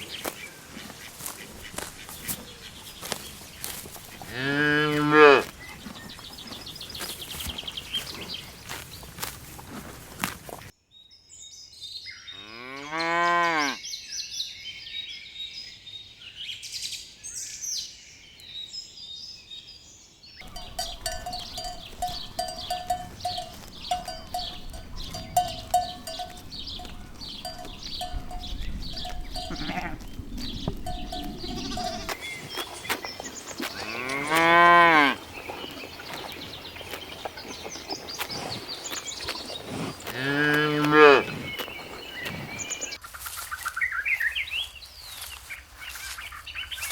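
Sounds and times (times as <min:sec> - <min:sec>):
birds chirping: 0:00.0 - 0:10.7, 0:20.4 - 0:46.9
cow mooing: 0:04.2 - 0:05.5, 0:12.4 - 0:13.8, 0:20.4 - 0:32.2, 0:33.8 - 0:35.2, 0:40.1 - 0:41.4
repeated ringing tones: 0:20.4 - 0:32.2.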